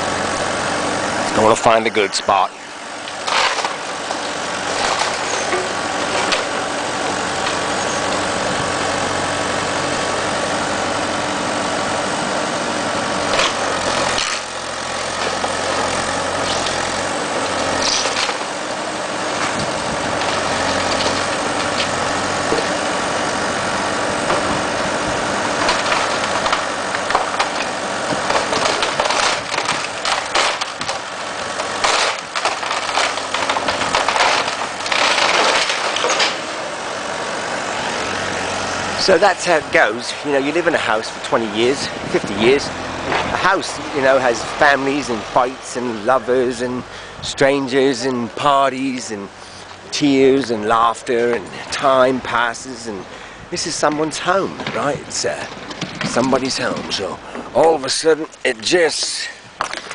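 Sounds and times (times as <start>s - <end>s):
heavy machinery engine running: 0.0s - 59.9s
building material crunching: 3.0s - 8.4s, 24.2s - 36.6s, 37.8s - 53.0s.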